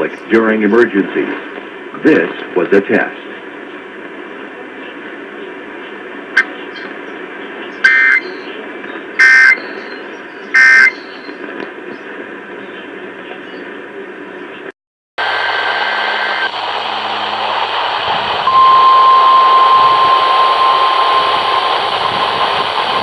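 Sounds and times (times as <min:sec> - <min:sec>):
radio static: 0:00.0 - 0:09.7, 0:10.6 - 0:23.0
screeching two-tone digital bursts: 0:07.9 - 0:08.3, 0:10.6 - 0:11.1.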